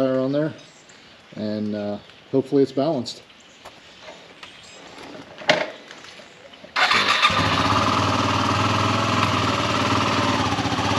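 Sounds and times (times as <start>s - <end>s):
motorcycle engine starting and idling: 6.8s - 10.9s.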